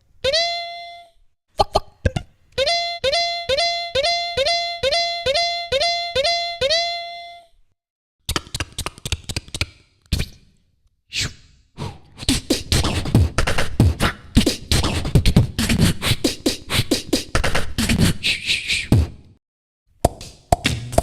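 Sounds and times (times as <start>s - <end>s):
person beatboxing: 11.8s - 19.1s.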